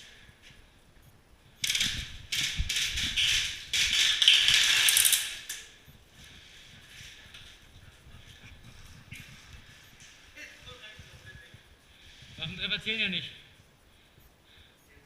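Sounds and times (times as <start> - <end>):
airsoft gun firing bursts: 1.6 - 5.4.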